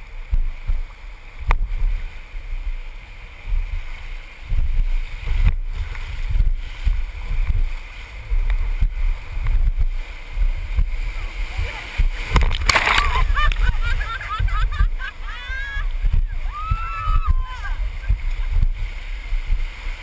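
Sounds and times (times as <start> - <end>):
rushing river water: 0.0 - 20.0
wind rumble on microphone: 0.0 - 20.0.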